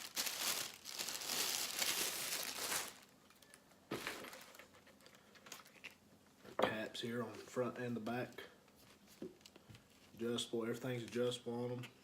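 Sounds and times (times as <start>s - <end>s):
packaging crinkling: 0.0s - 6.0s.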